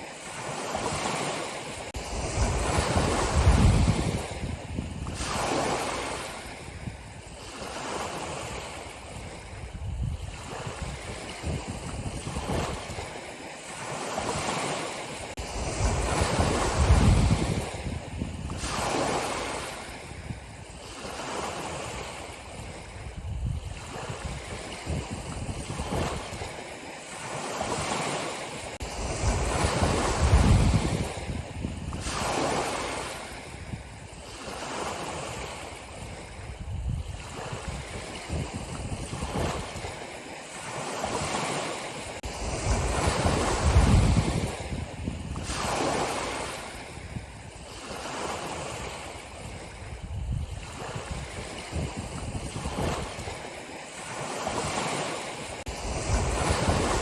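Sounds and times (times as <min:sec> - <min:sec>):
ocean waves breaking on shore: 0:00.0 - 0:57.0.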